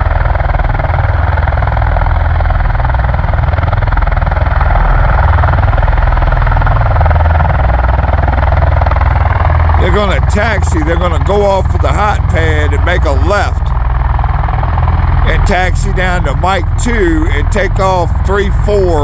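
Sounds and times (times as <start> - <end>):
engine rush: 4.3 - 19.0.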